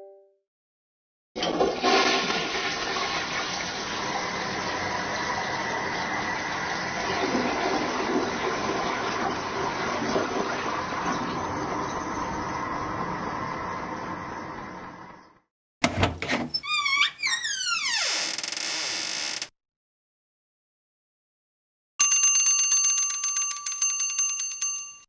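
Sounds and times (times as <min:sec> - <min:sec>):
toilet flushing: 0:01.4 - 0:15.3.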